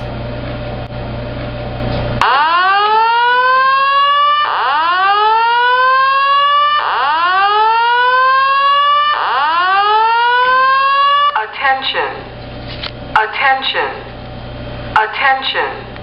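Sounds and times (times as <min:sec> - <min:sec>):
fire alarm rising whoop: 0:02.2 - 0:11.4.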